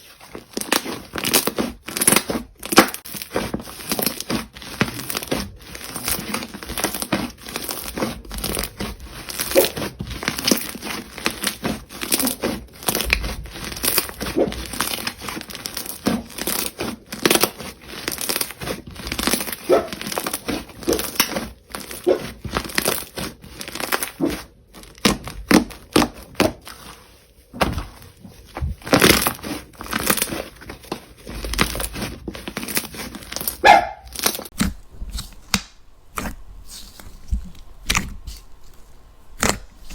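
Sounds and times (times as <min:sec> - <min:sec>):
slime squeak: 0:05.1 - 0:24.5
slime squishing with wet pops: 0:28.6 - 0:39.9.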